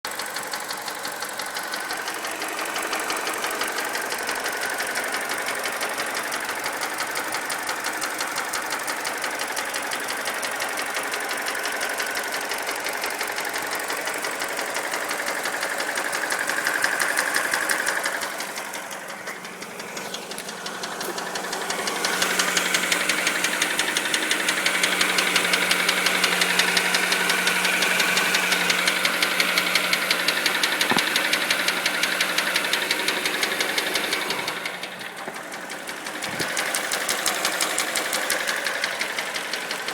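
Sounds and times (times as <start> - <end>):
car engine knocking: 0.0 - 39.9
steady engine hum: 14.4 - 39.9.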